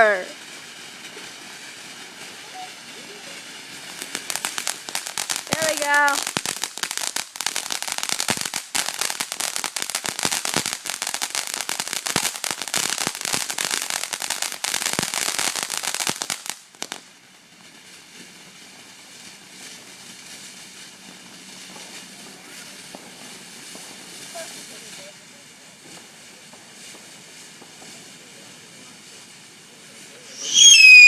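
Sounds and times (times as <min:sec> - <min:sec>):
faint background noise: 0:00.0 - 0:31.0
firework crackling: 0:00.0 - 0:31.0.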